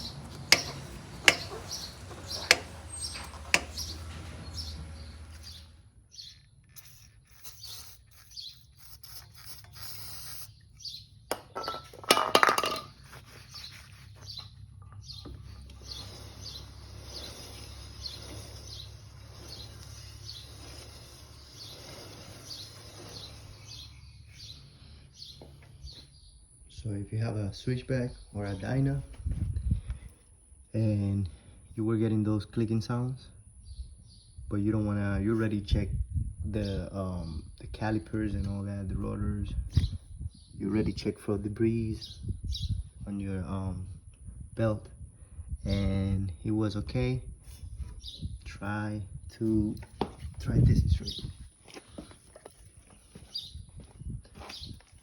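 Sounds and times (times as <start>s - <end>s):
birds chirping faintly: 0.0s - 26.9s, 49.2s - 55.0s
sharp clicks from motorcycle wheel: 0.3s - 3.9s.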